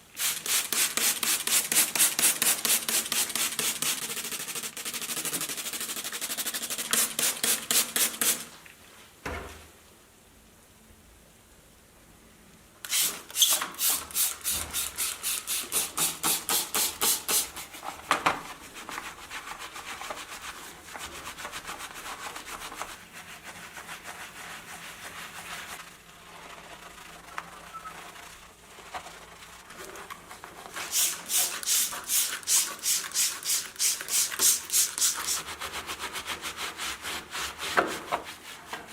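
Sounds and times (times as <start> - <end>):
rhythmic rubbing strokes: 0.4 - 8.4, 30.8 - 38.9
soft irregular scraping: 17.7 - 30.9.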